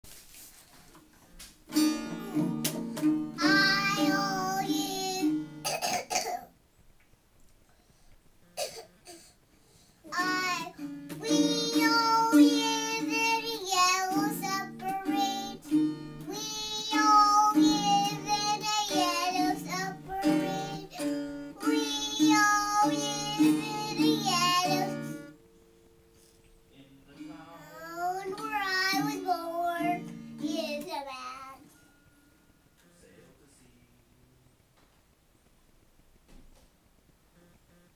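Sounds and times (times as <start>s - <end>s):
guitar playing: 1.4s - 5.7s, 10.1s - 33.2s
boy singing: 3.4s - 5.4s, 10.1s - 25.3s, 27.5s - 31.7s.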